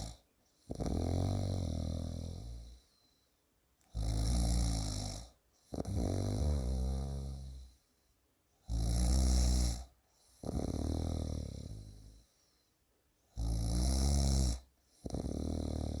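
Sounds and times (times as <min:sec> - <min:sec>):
person snoring: 0:00.0 - 0:02.9, 0:03.9 - 0:07.8, 0:08.6 - 0:12.3, 0:13.3 - 0:16.0.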